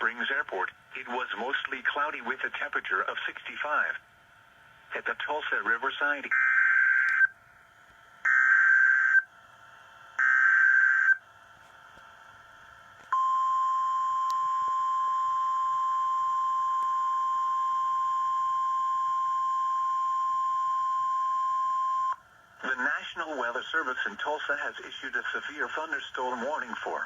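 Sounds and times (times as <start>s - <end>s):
steady warning alarm tone: 6.3s - 7.4s, 8.2s - 9.3s, 10.2s - 11.3s, 13.1s - 22.2s.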